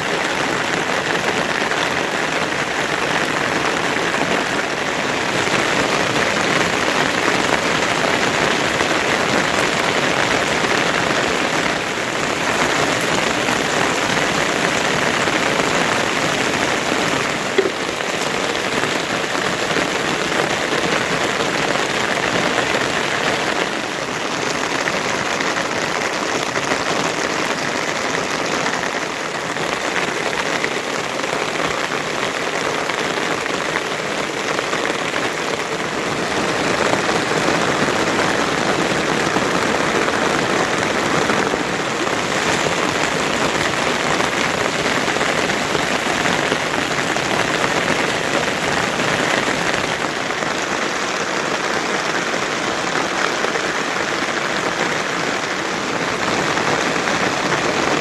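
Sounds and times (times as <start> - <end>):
heavy rain falling: 0.0 - 58.0
brief tap: 17.6 - 17.8.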